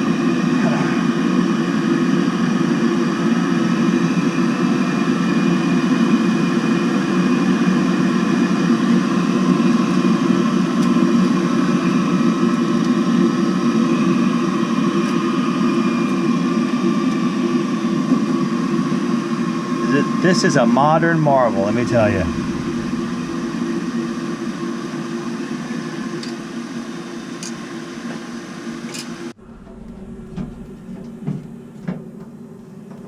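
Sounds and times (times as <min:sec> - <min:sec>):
boiler burner rushing: 0:16.2 - 0:26.8
faint fan whine: 0:19.8 - 0:24.9.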